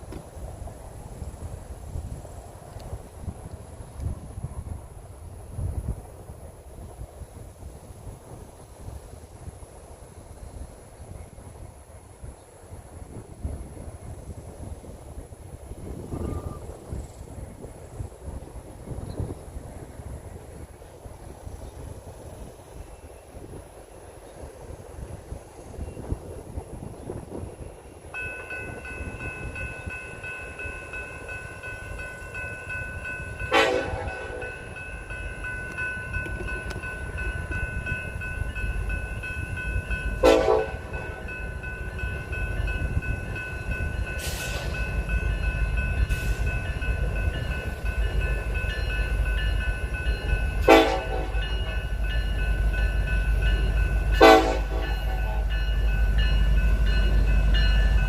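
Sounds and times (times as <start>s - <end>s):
diesel locomotive rumble: 12.6s - 58.0s
train air horn blasts: 33.5s - 34.6s, 40.2s - 40.9s, 50.6s - 51.4s, 54.2s - 55.2s.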